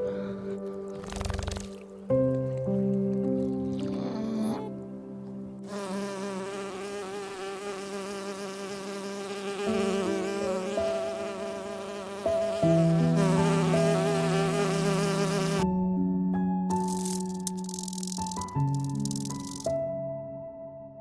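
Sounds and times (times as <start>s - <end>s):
insect buzzing: 0.9s - 1.9s, 5.7s - 15.6s, 16.7s - 19.7s.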